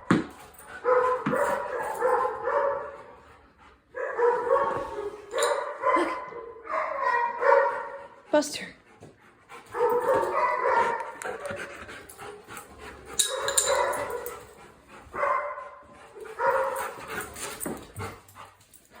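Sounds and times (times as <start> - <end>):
dog whining barks: 4.0 - 8.0.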